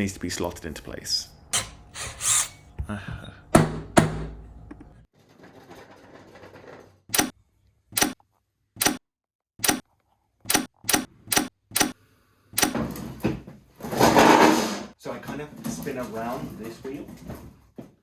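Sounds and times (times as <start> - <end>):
sharp knocks: 3.6 - 4.4.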